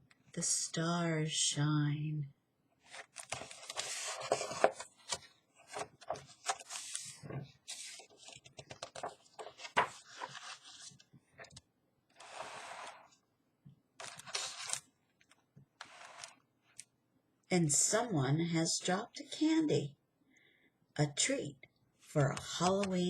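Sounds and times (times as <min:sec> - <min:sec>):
book pages rustling: 0:02.8 - 0:11.6, 0:12.2 - 0:13.1, 0:14.0 - 0:16.4
sliding paper scrape: 0:02.9 - 0:11.6, 0:12.2 - 0:13.2, 0:14.0 - 0:14.8, 0:15.8 - 0:16.4.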